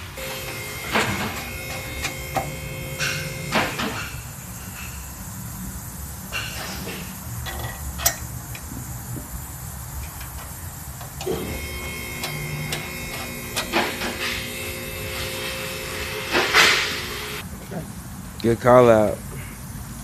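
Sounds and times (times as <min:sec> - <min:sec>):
steady humming tone: 0:00.0 - 0:17.4
metal tools clinking and knocking: 0:06.4 - 0:08.7.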